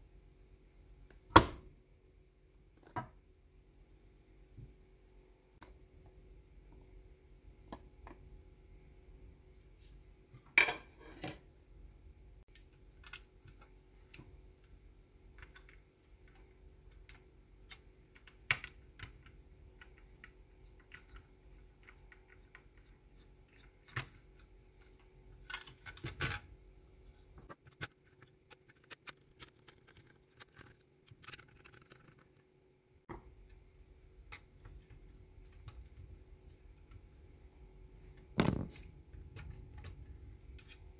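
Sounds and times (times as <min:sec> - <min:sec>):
faint steady hum: 0:00.0 - 0:40.9
small parts and tools clicking: 0:12.5 - 0:26.5, 0:27.5 - 0:32.5.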